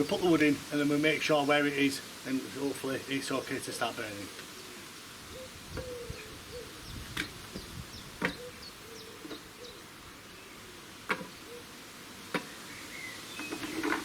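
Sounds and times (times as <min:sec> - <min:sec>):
faint birds chirping: 0:00.0 - 0:14.0.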